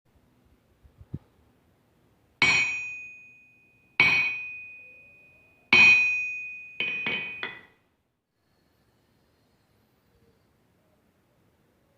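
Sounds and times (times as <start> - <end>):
hammer striking ringing anvil: 2.4 - 7.8.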